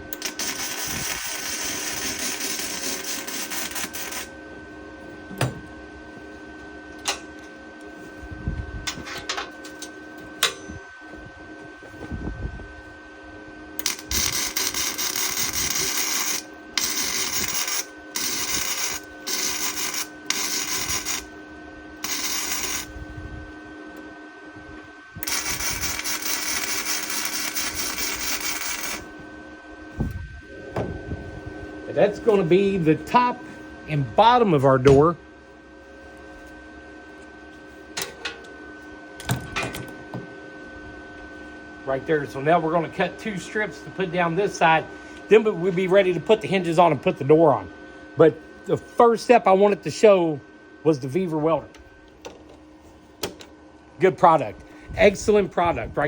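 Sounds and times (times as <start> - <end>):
faint steady hum: 0.0 - 56.0
welder crackling: 0.1 - 4.4, 13.8 - 21.4, 22.0 - 23.0, 25.2 - 29.2.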